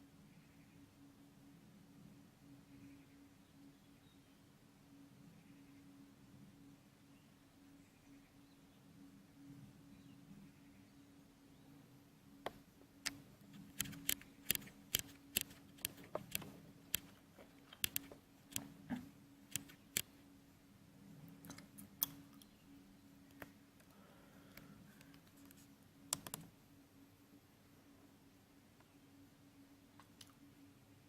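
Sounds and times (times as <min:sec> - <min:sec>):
faint steady hum: 0:00.0 - 0:31.0
sharp clicks and taps: 0:12.4 - 0:20.1, 0:26.1 - 0:26.5.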